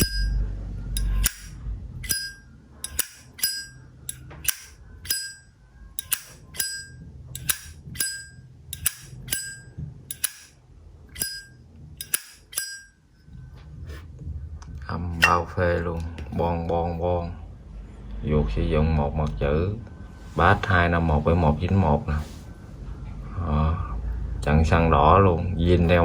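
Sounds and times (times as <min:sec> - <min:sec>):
lighter lid clicking: 0:06.0 - 0:06.7, 0:10.1 - 0:10.5, 0:12.0 - 0:12.7.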